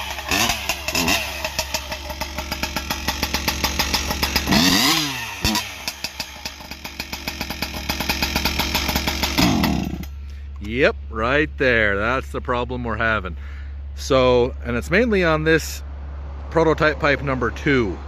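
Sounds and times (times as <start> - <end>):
chainsaw revving and idling: 0.0 - 10.4.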